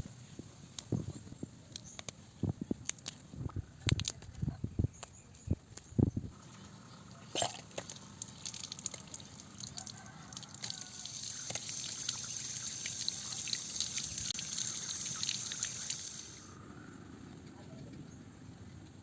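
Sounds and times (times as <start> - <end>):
water trickling and splashing: 7.3 - 16.5.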